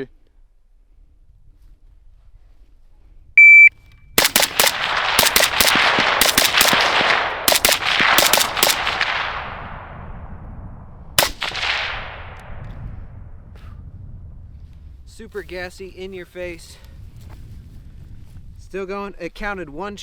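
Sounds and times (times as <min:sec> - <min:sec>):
shot timer beep: 0:03.4 - 0:03.8
suppressed rifle shots echoing: 0:04.2 - 0:10.4, 0:11.1 - 0:12.8.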